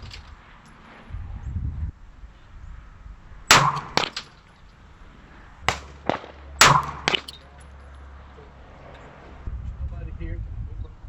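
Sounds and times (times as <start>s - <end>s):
low wind rumble: 0.0s - 11.0s
gunshots with echo: 3.5s - 4.3s, 5.7s - 7.5s.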